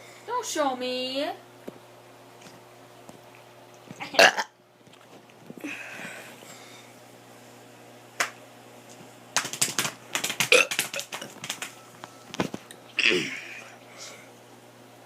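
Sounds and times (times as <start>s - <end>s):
sharp clicks and taps: 9.4s - 11.7s.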